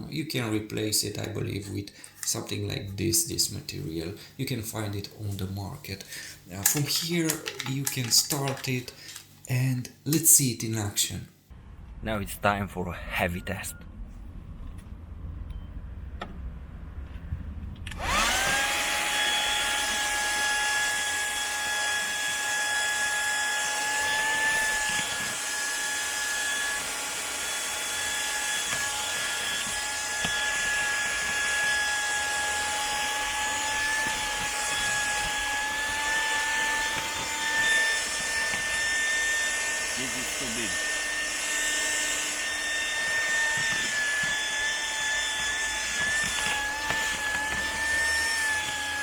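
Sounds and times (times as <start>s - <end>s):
vacuum cleaner motor whining: 6.6s - 9.2s, 17.9s - 49.0s.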